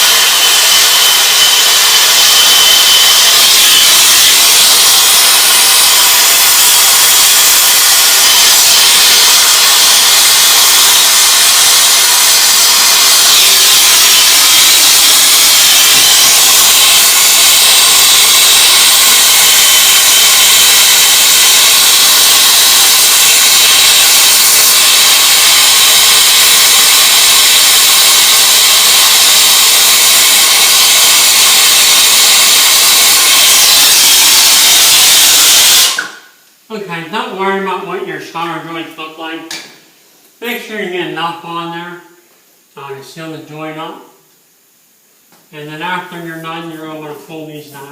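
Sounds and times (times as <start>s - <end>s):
torch flame hissing: 0.0s - 36.2s.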